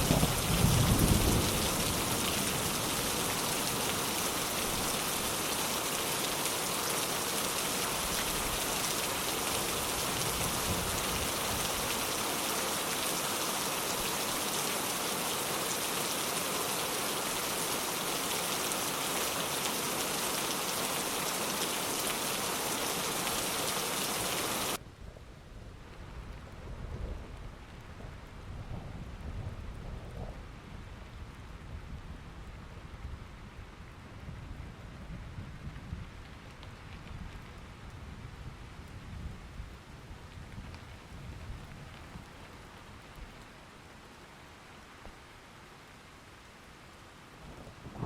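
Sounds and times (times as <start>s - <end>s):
heavy rain falling: 0.0s - 24.8s, 34.6s - 48.0s.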